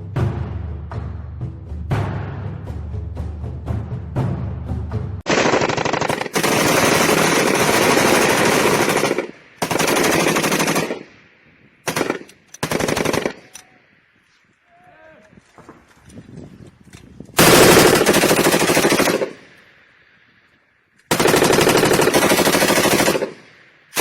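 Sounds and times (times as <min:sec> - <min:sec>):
music with heavy drum beats: 0:00.0 - 0:05.2
machine gun firing bursts: 0:05.3 - 0:11.2, 0:11.8 - 0:13.5, 0:17.4 - 0:19.5, 0:21.1 - 0:24.0.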